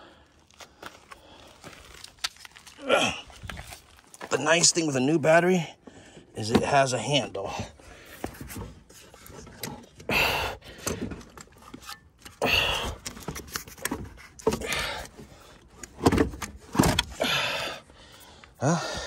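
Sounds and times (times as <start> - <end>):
battery case knocking and scraping: 10.8 - 17.2.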